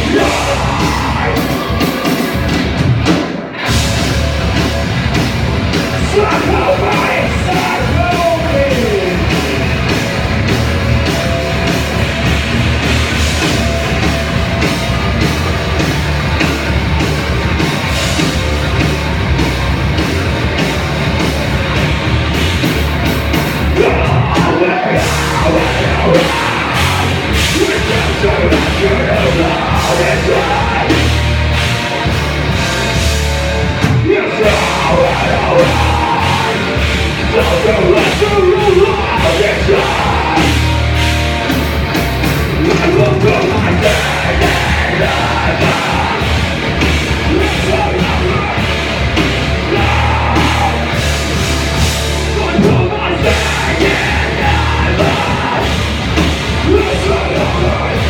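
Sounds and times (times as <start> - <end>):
person singing: 0.0 - 2.5, 6.0 - 9.7, 23.7 - 31.5, 33.9 - 41.1, 42.5 - 51.2, 52.3 - 58.0
rock band playing live: 0.0 - 58.0.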